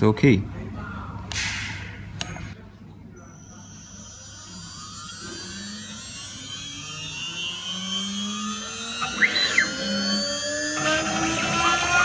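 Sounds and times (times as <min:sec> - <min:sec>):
machine motor whine moving: 0:03.2 - 0:12.0
router spindle motor whine: 0:03.3 - 0:12.0.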